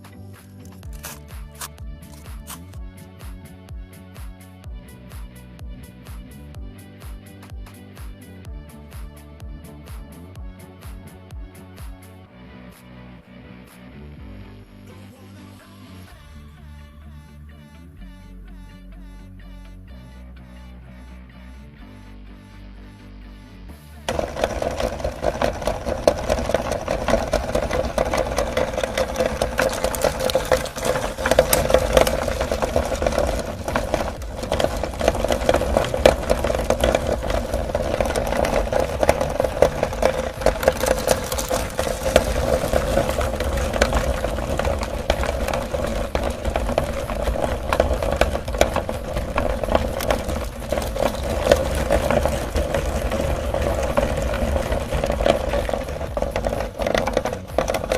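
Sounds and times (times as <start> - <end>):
rattle of chocolate being crushed: 0.3 - 2.8, 24.1 - 57.9
meat grinder motor hum: 24.1 - 57.9.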